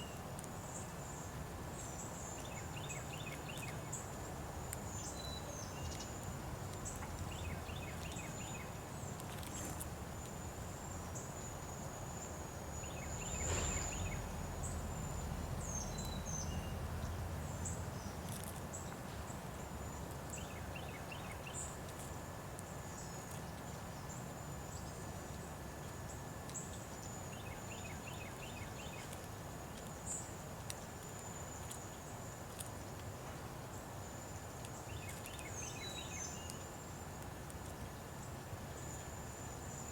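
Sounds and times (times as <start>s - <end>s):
low background hum: 0.0s - 39.9s
small birds chirping: 1.8s - 19.7s, 33.8s - 36.9s.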